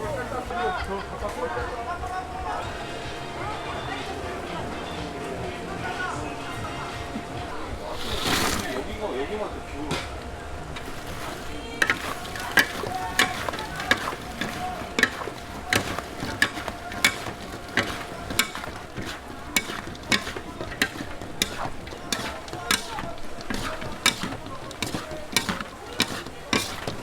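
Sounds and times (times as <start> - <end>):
food sizzling: 2.3 - 27.0
utensil knocking against pan: 10.8 - 27.0.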